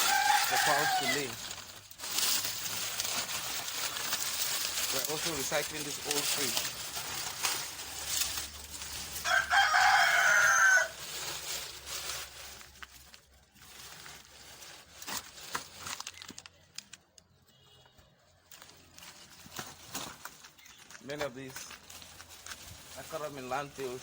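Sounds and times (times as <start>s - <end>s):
rooster crowing: 0.0s - 1.4s, 9.1s - 11.0s.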